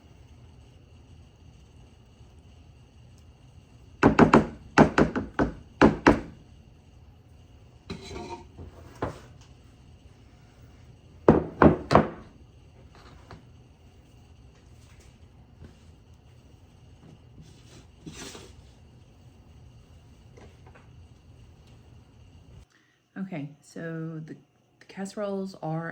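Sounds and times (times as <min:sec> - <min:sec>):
utensil scraping: 0:07.9 - 0:09.4, 0:14.7 - 0:19.5.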